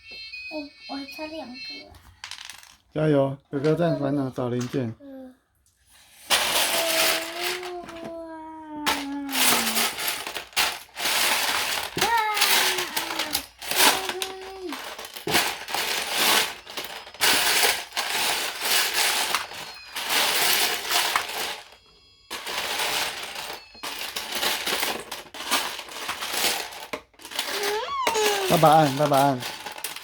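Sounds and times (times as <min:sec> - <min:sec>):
plastic bricks clattering: 0:06.3 - 0:30.0.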